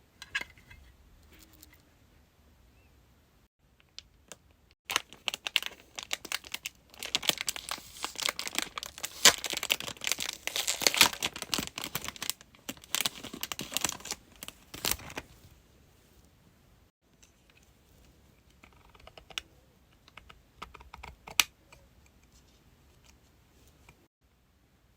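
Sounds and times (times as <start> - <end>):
packaging crinkling and tearing: 4.9 - 15.4.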